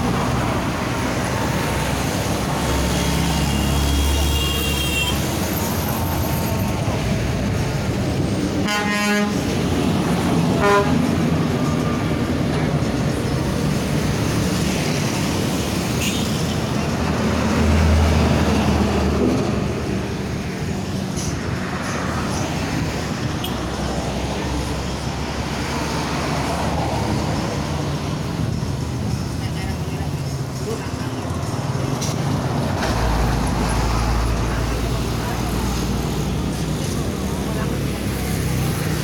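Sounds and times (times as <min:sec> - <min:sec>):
road traffic noise: 0:00.0 - 0:39.0
deep bus air horn: 0:08.6 - 0:09.6, 0:10.6 - 0:11.1
short higher horn toots: 0:10.6 - 0:11.1.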